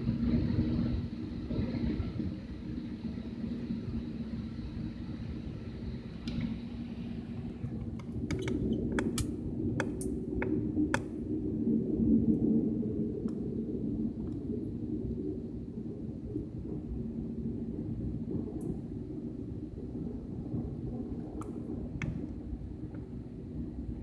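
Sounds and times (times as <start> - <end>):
airliner cabin hum: 0.0 - 24.0.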